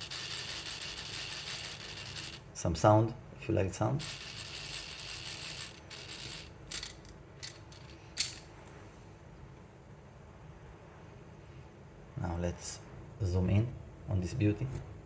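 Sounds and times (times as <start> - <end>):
fidget spinner whirring: 0.0 - 2.5, 4.0 - 7.1.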